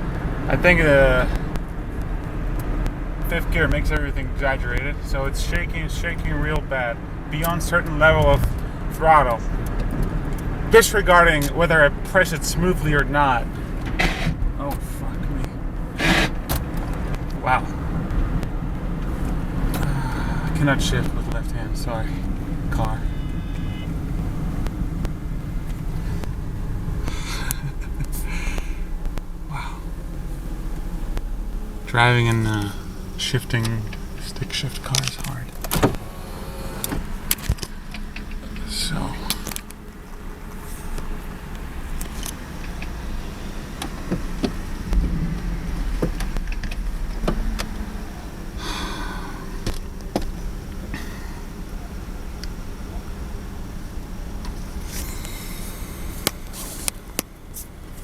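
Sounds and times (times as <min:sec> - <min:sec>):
car engine drone from cabin: 0:00.0 - 0:58.0
sharp clicks and knocks: 0:32.5 - 0:38.7, 0:43.8 - 0:47.9, 0:49.6 - 0:50.5
short hissing rush: 0:54.7 - 0:57.8.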